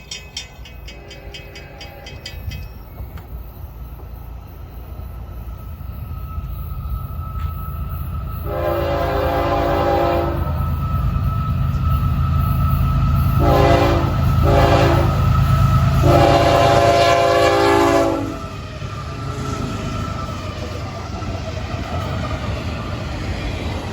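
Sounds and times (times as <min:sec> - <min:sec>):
diesel locomotive rumble: 0:00.0 - 0:23.9
train horn blasts: 0:00.8 - 0:02.5, 0:08.4 - 0:10.7, 0:13.2 - 0:18.6.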